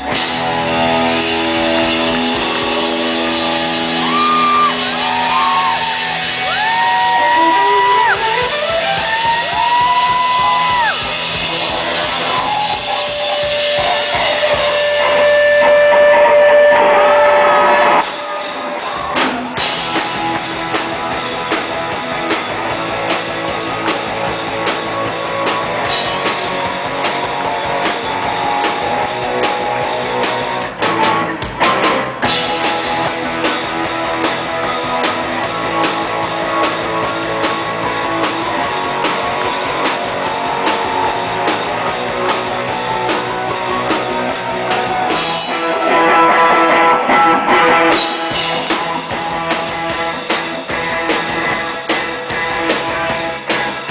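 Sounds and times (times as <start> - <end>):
live rock band playing: 0.0 - 53.9.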